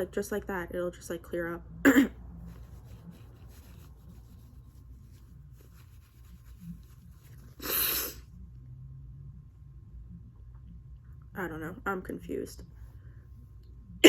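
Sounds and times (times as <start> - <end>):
faint rustling: 2.4 - 7.7.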